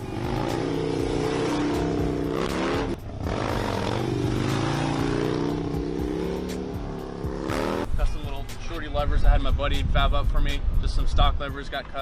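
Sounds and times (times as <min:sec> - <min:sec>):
motorcycle engine revving: 0:00.0 - 0:08.0.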